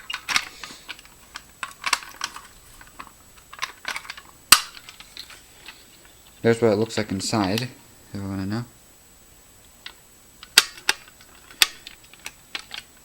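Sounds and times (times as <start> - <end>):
handling clicks and knocks: 0.0 - 5.8
loud sharp snap: 4.5 - 4.8.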